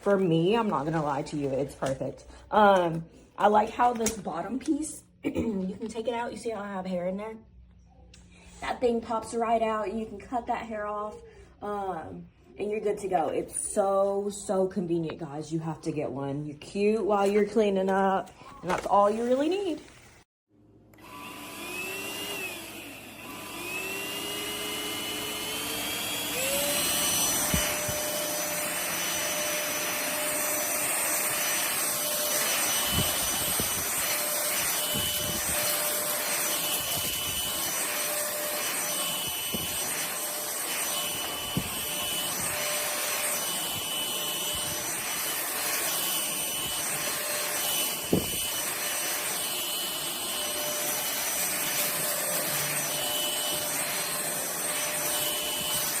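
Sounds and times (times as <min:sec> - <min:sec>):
stick vacuum whining: 0:20.9 - 0:56.0.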